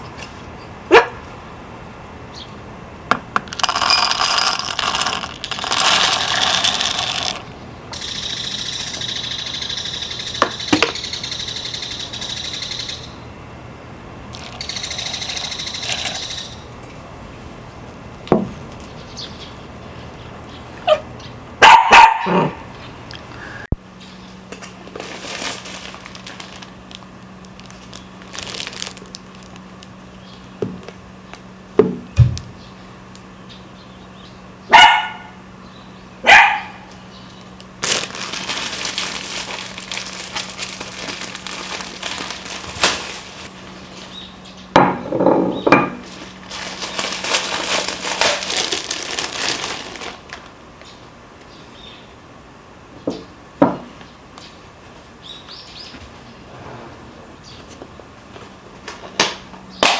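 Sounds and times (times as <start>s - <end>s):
dog barking: 0.9s - 1.2s, 21.6s - 22.6s, 34.7s - 35.4s, 36.2s - 36.9s.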